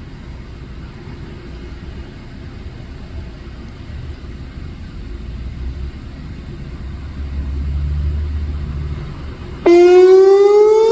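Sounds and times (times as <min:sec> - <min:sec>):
low vehicle engine rumble: 0:00.0 - 0:10.9
warning siren winding up: 0:09.6 - 0:10.9.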